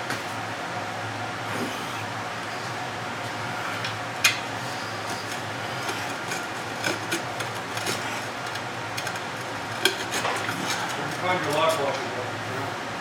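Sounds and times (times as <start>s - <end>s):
small metal hardware clinking: 4.2s - 12.0s.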